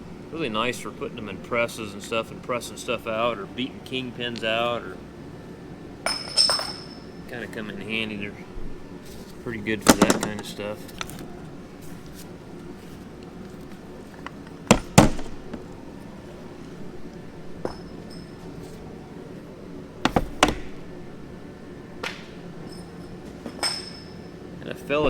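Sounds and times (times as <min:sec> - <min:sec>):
metal engine parts knocking: 0:09.8 - 0:11.2, 0:14.7 - 0:15.8, 0:20.1 - 0:20.8.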